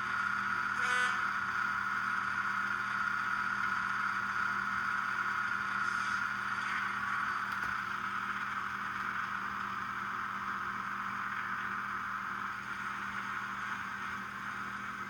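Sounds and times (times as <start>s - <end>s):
diesel engine drone from small speaker: 0.0s - 15.0s.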